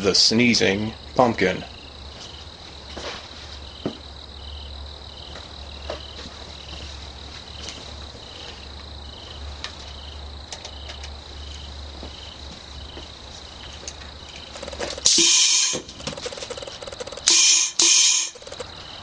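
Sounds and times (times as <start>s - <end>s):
crickets chirping: 0.0s - 19.0s
compressed air blast: 15.0s - 15.8s, 17.3s - 18.4s.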